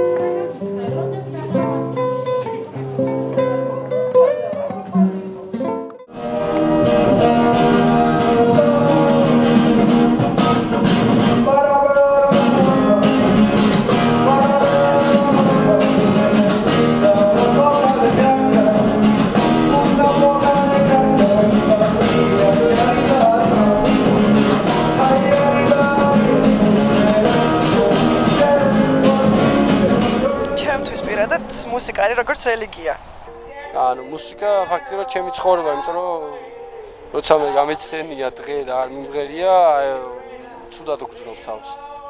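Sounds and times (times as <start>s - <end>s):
strummed acoustic guitar: 6.1s - 33.5s
person singing: 6.2s - 31.8s.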